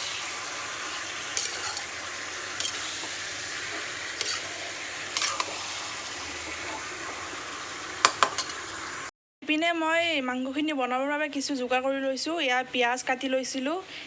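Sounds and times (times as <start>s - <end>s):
oil popping: 0.0s - 8.8s
chicken sizzling in hot oil: 0.0s - 9.1s.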